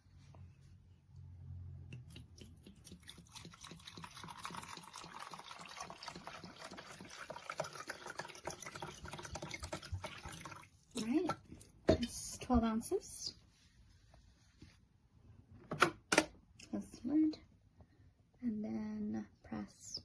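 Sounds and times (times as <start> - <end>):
water pouring into coffee maker: 2.1 - 11.6.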